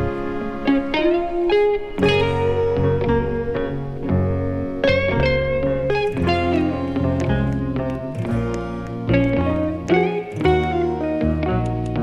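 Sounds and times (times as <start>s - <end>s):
guitar background music: 0.0s - 12.0s.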